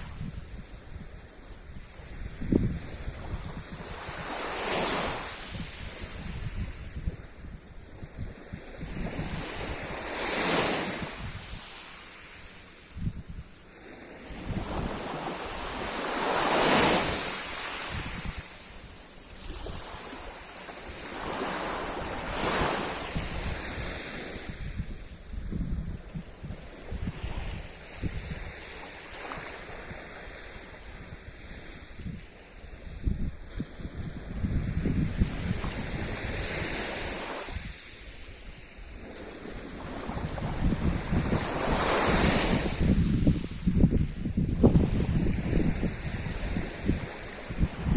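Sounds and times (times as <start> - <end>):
sea waves breaking on shore: 0.0 - 26.0, 26.6 - 47.9
wind rumble on microphone: 0.0 - 47.9.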